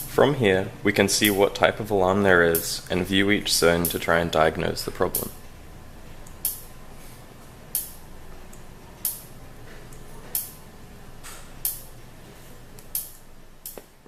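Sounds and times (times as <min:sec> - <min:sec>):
faint steady hum: 0:00.0 - 0:14.0
electric fence energizer clicks: 0:02.4 - 0:05.5, 0:06.2 - 0:06.9, 0:07.6 - 0:12.1, 0:12.7 - 0:14.0.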